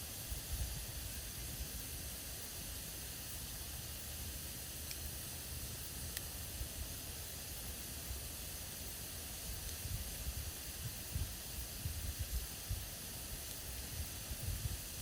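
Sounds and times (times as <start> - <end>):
campfire hiss and rumble: 0.0 - 15.0
faint crackles and pops: 4.7 - 5.2, 5.9 - 7.4, 8.9 - 15.0.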